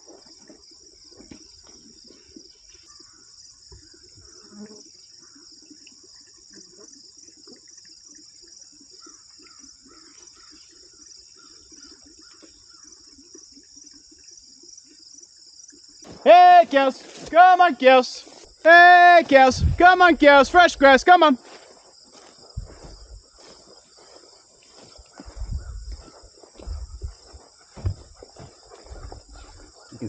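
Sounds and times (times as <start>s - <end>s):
insects trilling: 0.0s - 30.0s
soft rustling and scuffing: 21.4s - 30.0s.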